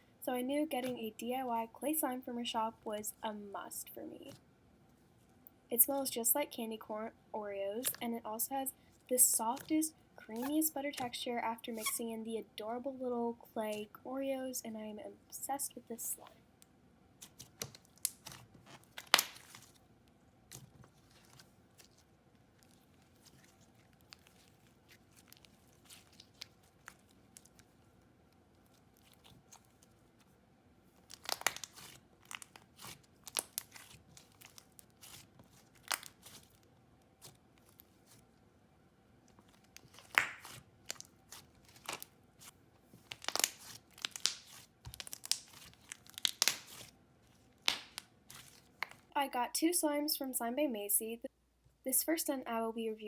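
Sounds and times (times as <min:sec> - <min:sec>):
slime crackling and popping: 0:17.2 - 0:19.8, 0:20.4 - 0:27.8, 0:30.9 - 0:38.2, 0:39.3 - 0:49.1.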